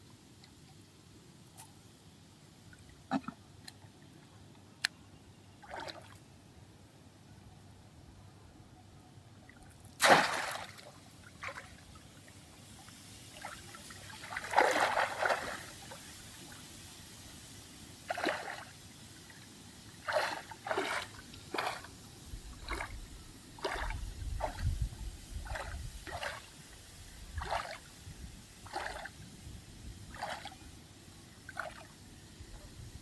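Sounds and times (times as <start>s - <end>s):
water splashing: 10.0s - 11.8s, 13.3s - 16.0s, 18.1s - 18.7s, 20.0s - 21.9s, 23.6s - 24.8s, 25.4s - 26.5s, 27.4s - 27.9s, 28.6s - 29.2s, 30.1s - 30.6s, 31.5s - 32.0s.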